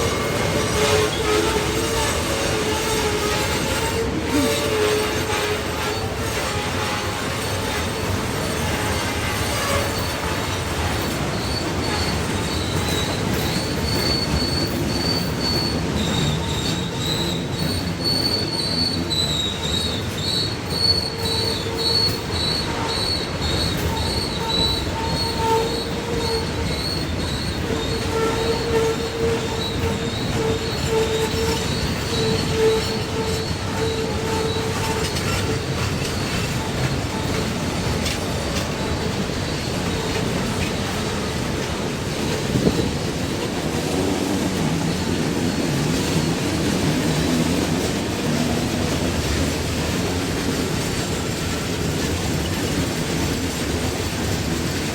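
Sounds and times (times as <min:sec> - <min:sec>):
rumble of passing train cars: 0:00.0 - 0:54.9
train wheels squealing: 0:00.0 - 0:54.9.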